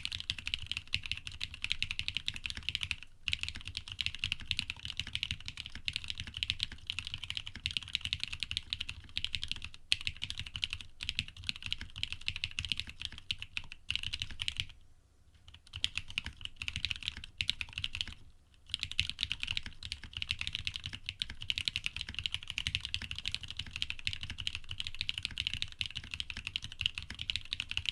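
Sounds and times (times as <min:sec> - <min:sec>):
typing on mechanical keyboard: 0:00.0 - 0:14.8, 0:15.4 - 0:27.9.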